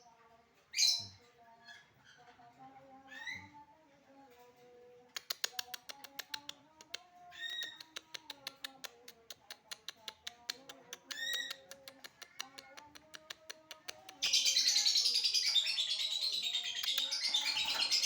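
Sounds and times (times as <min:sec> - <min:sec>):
loud harsh chatter: 0:10.5 - 0:18.0.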